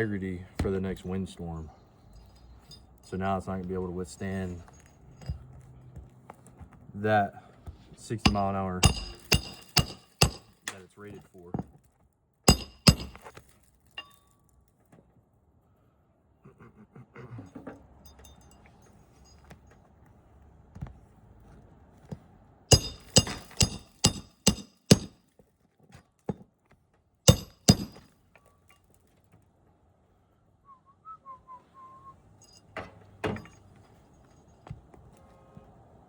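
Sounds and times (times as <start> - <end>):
hammer striking roof shingles: 8.3 - 10.6, 12.5 - 13.4, 22.7 - 25.2, 27.3 - 28.1
small taps and clinks: 12.5 - 14.3, 17.6 - 19.9.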